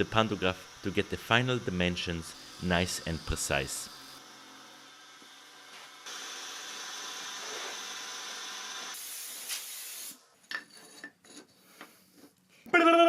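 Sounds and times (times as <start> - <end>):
cutter milling whir: 0.0 - 9.0.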